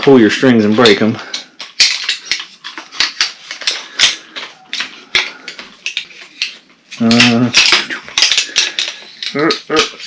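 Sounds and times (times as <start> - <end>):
folding pole sections clicking: 0.0 - 10.0
person humming: 7.0 - 7.7.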